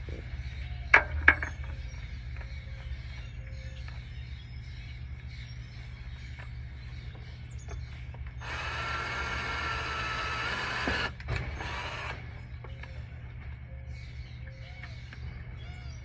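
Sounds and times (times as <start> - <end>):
power drill running: 8.4 - 12.3.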